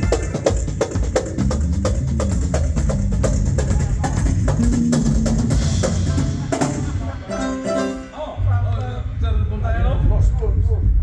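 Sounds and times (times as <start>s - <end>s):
drum kit beat: 0.0s - 8.3s
bass line: 1.3s - 11.0s.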